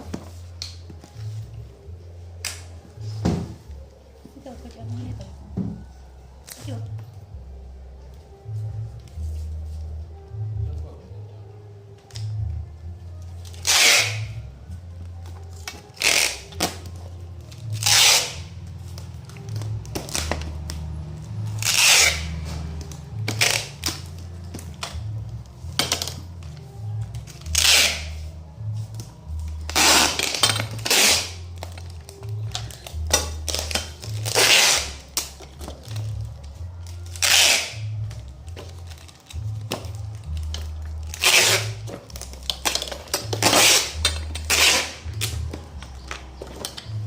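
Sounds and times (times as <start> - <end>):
background music with bass line: 0.0 - 47.0
packing tape ripping off roll: 13.3 - 14.5, 15.2 - 25.1, 27.1 - 28.3, 29.0 - 47.0.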